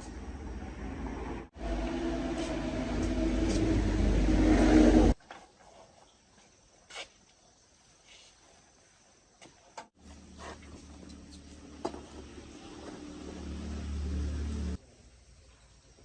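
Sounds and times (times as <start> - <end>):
engine rumbling: 0.0 - 5.2, 10.0 - 14.8.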